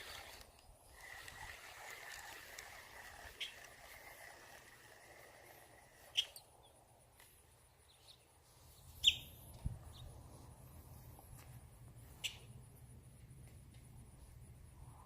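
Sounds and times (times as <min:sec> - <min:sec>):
short sharp bird chirps: 0:09.0 - 0:09.4.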